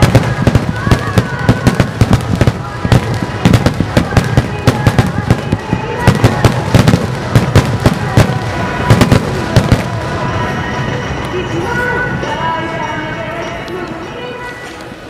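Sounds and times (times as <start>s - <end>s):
fireworks bursting with sharp bangs: 0.0s - 11.4s.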